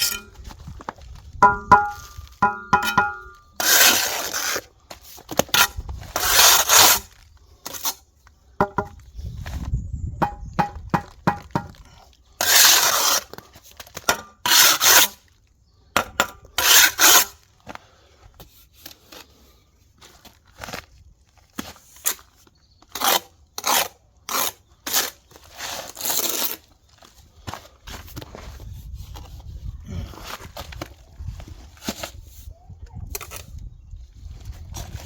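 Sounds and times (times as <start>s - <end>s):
trowel scraping mortar on concrete: 0.0s - 0.5s, 1.4s - 9.0s, 10.2s - 15.3s, 16.0s - 17.4s, 21.6s - 26.7s.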